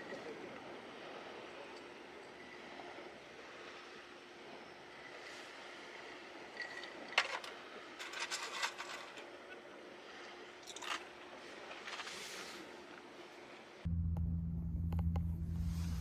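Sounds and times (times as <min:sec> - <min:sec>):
scraping and rustling handling noise: 0:06.7 - 0:09.3, 0:11.7 - 0:12.6.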